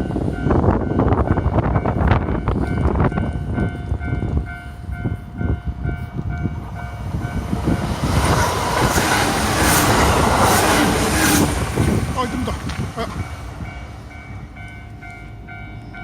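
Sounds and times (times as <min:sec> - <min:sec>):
crossing warning bell dinging: 0:00.0 - 0:16.0
train rumble and hiss: 0:00.0 - 0:16.0
train wheels clacking over rail joints: 0:07.2 - 0:15.2.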